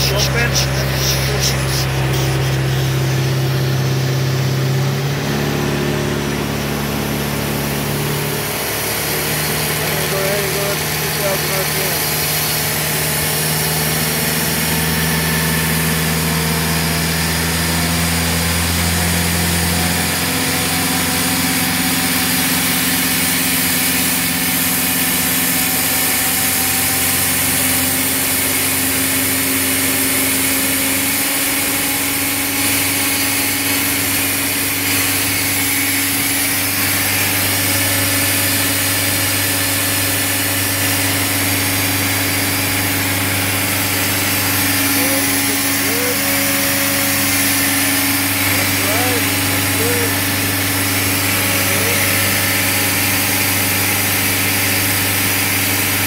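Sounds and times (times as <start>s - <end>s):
engine and compressor running: 0.0s - 56.0s.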